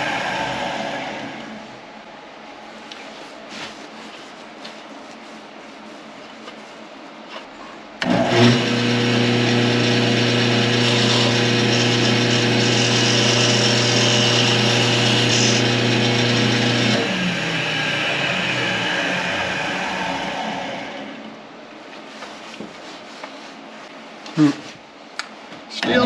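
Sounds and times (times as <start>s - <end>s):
wood lathe motor hum: 0.0s - 1.6s, 8.0s - 21.4s.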